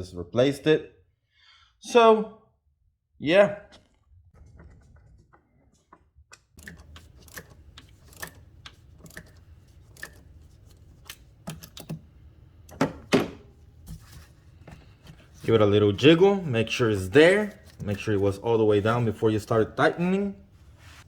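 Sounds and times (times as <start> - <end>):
plastic parts clicking and knocking: 6.4 - 15.4.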